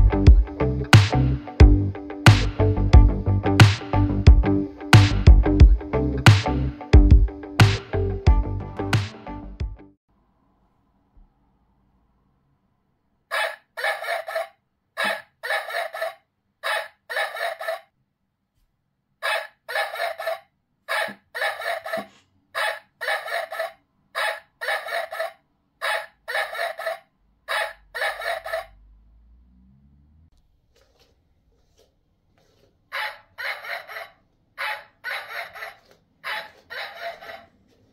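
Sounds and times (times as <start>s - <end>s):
recorded dog barking from speaker: 13.3s - 17.9s, 19.2s - 28.8s, 32.9s - 37.9s.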